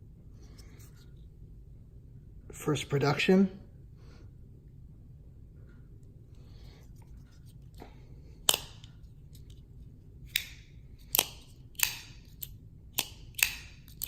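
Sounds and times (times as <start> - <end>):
folding knife blade clicking: 10.3 - 14.0.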